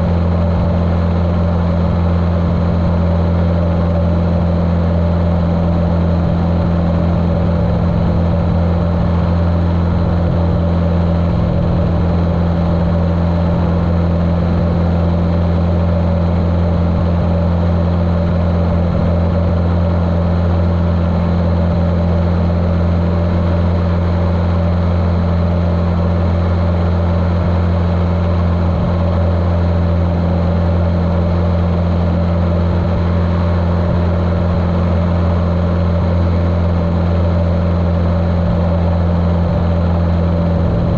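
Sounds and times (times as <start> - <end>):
muffled airplane engine drone: 0.0 - 40.9.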